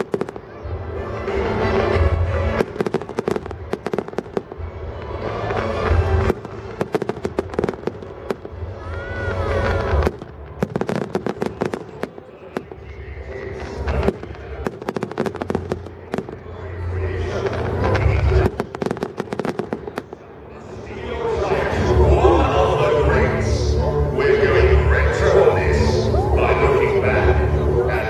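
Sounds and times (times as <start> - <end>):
fireworks bangs and crackles: 0.0 - 20.8.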